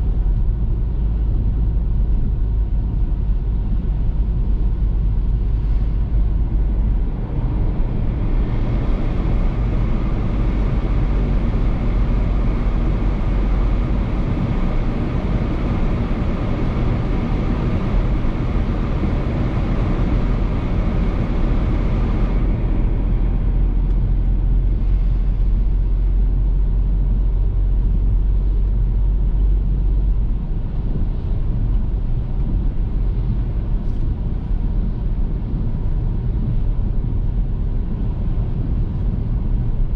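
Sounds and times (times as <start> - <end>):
car driving on wet road: 0.0 - 39.9.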